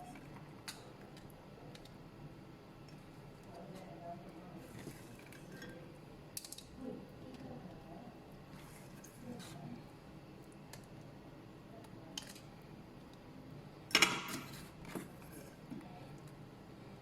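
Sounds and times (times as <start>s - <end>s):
kitchenware clicks and taps: 13.9s - 15.1s.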